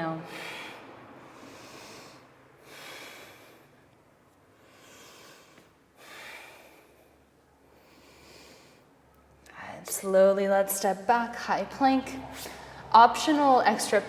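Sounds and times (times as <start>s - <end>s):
woman breathing through nose: 0.2s - 3.8s.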